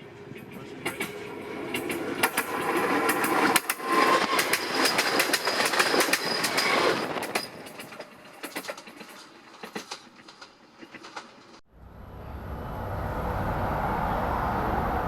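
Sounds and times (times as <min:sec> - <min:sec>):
train wheels clacking on rails: 0:00.3 - 0:11.6.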